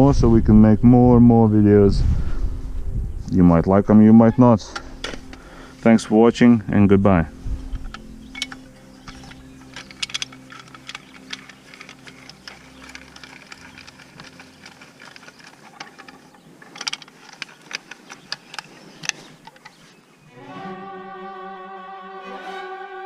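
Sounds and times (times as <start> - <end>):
low hum: 0.0 - 19.5
metal tools clicking and clattering: 7.7 - 19.8.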